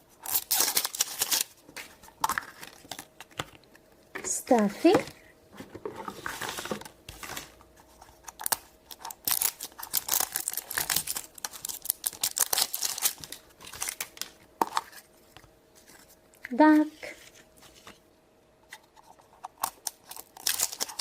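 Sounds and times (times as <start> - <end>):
plastic packaging crinkling and tearing: 0.0 - 3.8, 6.1 - 15.1, 19.0 - 21.0.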